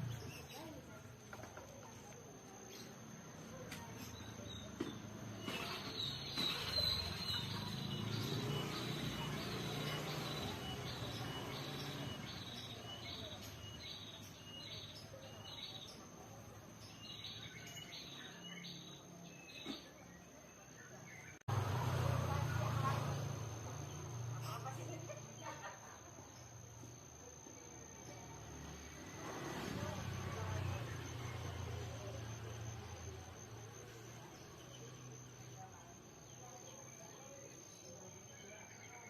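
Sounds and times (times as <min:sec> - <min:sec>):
sunbird high chirps: 0:01.8 - 0:21.4.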